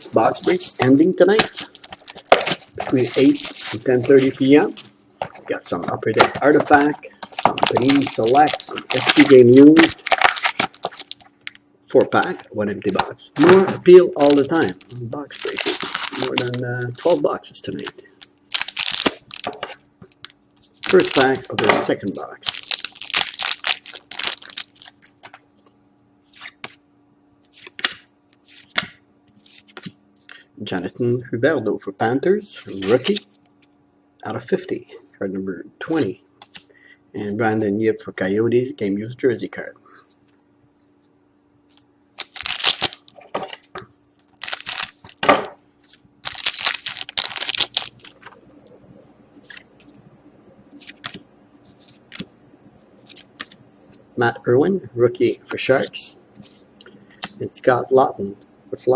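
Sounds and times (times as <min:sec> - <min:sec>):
card wrapper crinkling: 0:00.2 - 0:04.9, 0:06.5 - 0:11.6, 0:14.2 - 0:25.4, 0:42.2 - 0:45.2, 0:45.8 - 0:48.4, 0:50.7 - 0:52.3, 0:53.0 - 0:53.6.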